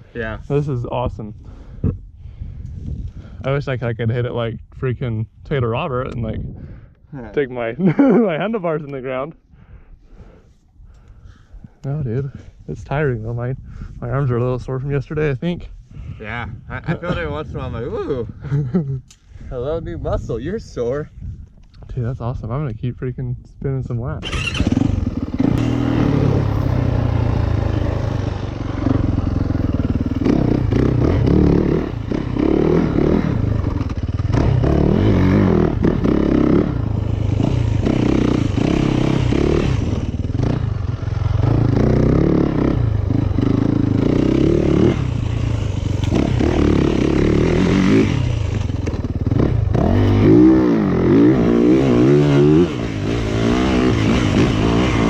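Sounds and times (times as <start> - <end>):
dirt bike engine revving: 24.2 - 55.0
bike and dirt clatter: 42.5 - 50.4.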